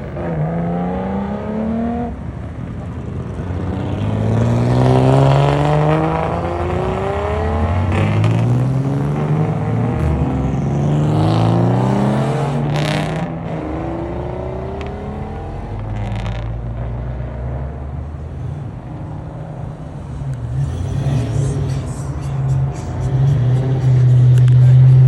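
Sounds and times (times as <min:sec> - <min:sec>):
car engine accelerating: 0:00.0 - 0:25.0
low engine rumble: 0:14.3 - 0:25.0.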